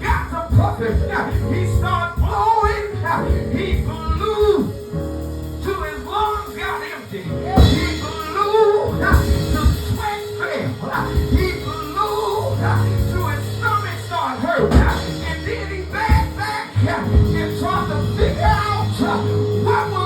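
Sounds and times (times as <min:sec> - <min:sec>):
church band music: 0:00.0 - 0:20.0
held bass notes: 0:00.0 - 0:20.0
voices singing: 0:06.3 - 0:20.0
drum hits: 0:07.5 - 0:10.4, 0:14.6 - 0:19.7.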